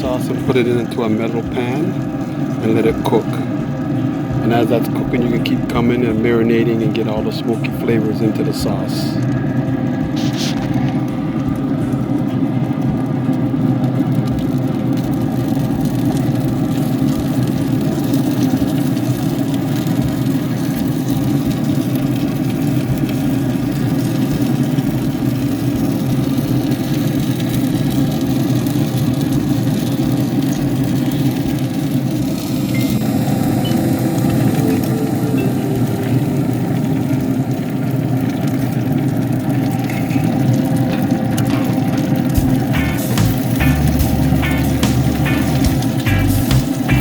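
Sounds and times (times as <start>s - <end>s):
motor or fan humming: 40.9s - 47.0s.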